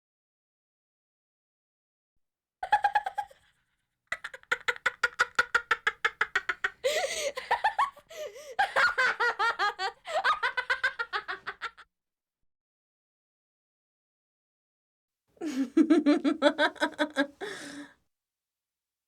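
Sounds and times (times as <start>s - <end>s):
person laughing: 2.6s - 3.5s, 4.2s - 11.8s, 15.4s - 17.9s.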